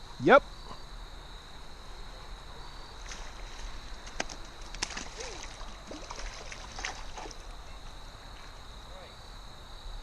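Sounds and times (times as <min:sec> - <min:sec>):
high insect drone: 0:00.0 - 0:10.0
creek water trickling: 0:01.4 - 0:08.9.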